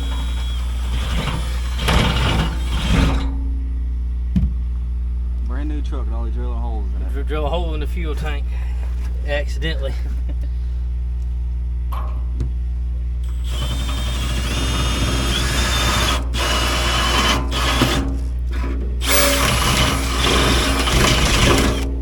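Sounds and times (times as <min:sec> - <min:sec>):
power drill boring through metal: 0:00.0 - 0:03.3, 0:13.2 - 0:21.9.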